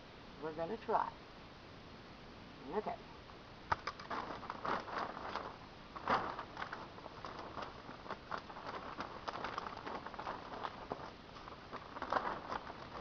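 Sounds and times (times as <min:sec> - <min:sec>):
plastic sheeting crinkling: 0:03.7 - 0:13.0.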